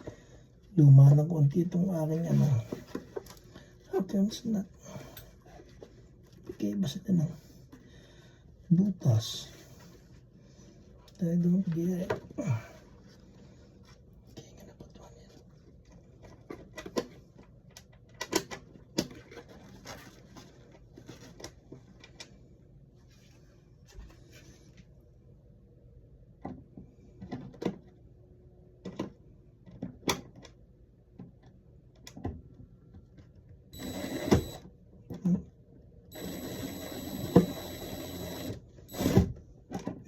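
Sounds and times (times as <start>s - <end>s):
screw driven in whirring: 33.8s - 34.7s, 36.1s - 39.3s.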